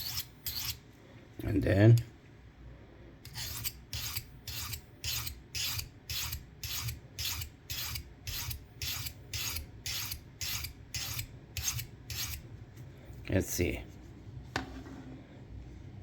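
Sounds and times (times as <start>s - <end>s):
knife blade rasping on sharpener: 0.0s - 0.8s, 3.3s - 12.4s.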